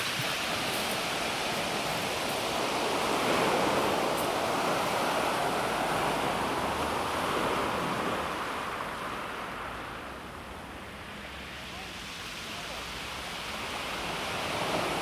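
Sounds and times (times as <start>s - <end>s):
waves washing onto pebbles: 0.0s - 9.3s.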